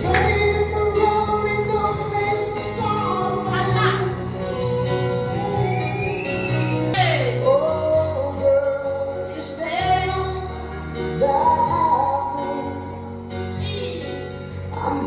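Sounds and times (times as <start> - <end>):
woman singing sliding notes: 0.0 - 10.6.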